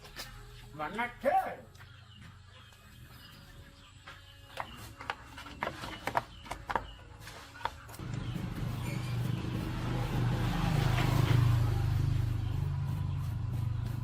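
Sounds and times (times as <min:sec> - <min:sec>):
motorcycle engine humming: 0:07.8 - 0:14.0.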